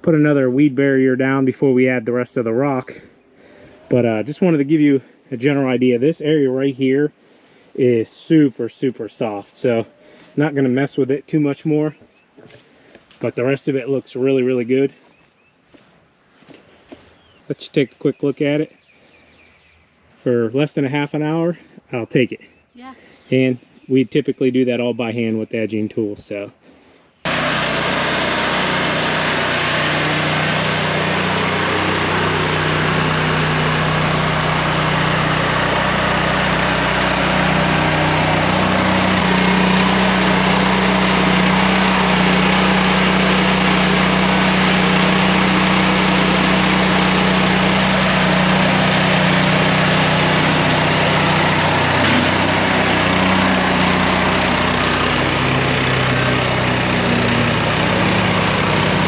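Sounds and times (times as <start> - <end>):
engine running loudly: 27.3 - 59.0.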